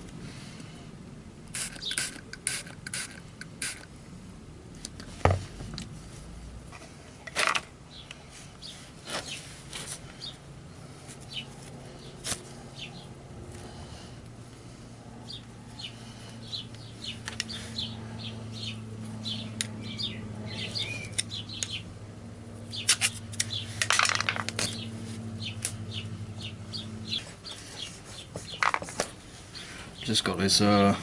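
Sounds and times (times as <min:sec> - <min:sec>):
steady low hum: 0:00.0 - 0:31.0
small birds chirping: 0:01.6 - 0:02.1, 0:10.1 - 0:21.9, 0:22.6 - 0:31.0.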